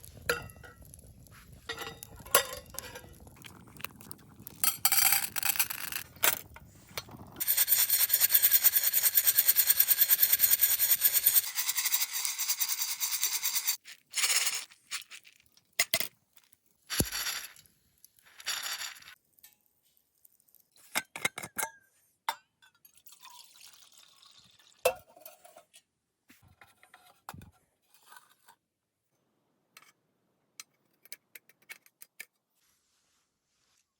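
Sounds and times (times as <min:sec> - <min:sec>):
coffee beans rattling in mesh roaster: 0:07.4 - 0:13.8.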